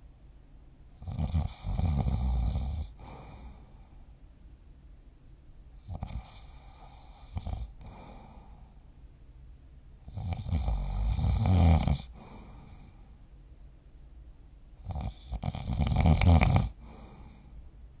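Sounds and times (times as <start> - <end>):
quiet breathing: 0.9 - 4.5, 5.6 - 9.4, 10.0 - 13.5, 14.6 - 18.0
person snoring: 1.0 - 3.8, 5.9 - 8.6, 10.1 - 13.0, 14.8 - 17.5.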